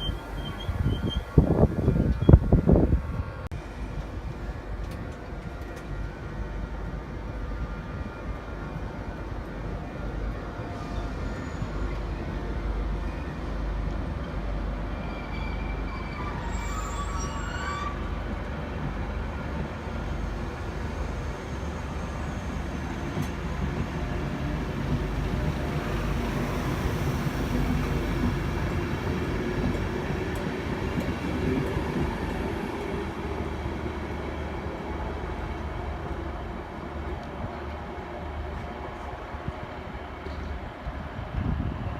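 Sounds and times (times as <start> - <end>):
train wheels rumbling: 0.0 - 41.9.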